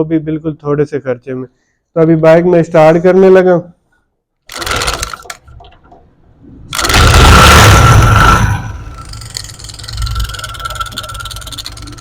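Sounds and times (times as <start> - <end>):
motorcycle engine starting: 6.7 - 12.0.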